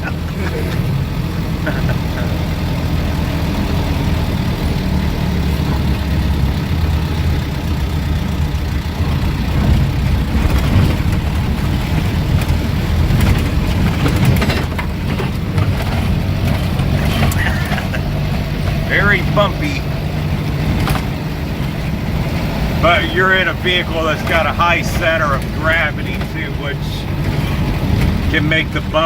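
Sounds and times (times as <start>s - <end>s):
vehicle engine and road rumble: 0.0s - 29.0s
knocks and rattles: 5.5s - 29.0s.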